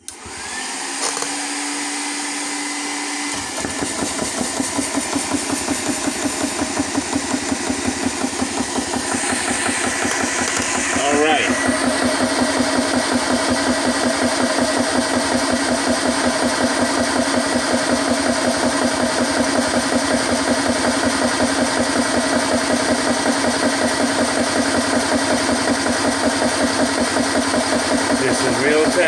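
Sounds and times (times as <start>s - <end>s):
air compressor pump chugging: 0.0s - 29.0s.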